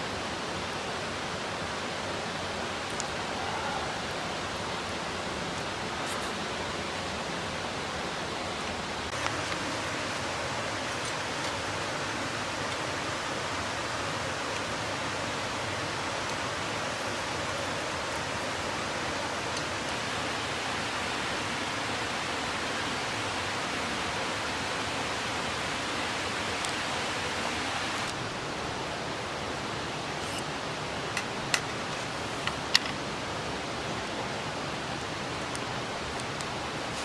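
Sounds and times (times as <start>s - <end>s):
mountain stream rushing: 0.0s - 37.0s.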